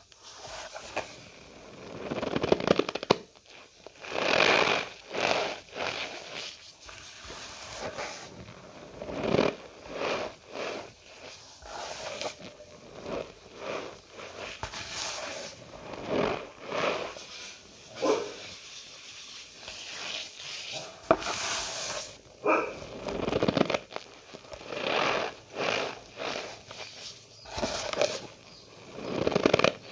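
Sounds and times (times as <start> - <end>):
cornstarch squeaking and crunching: 0.1 - 29.9.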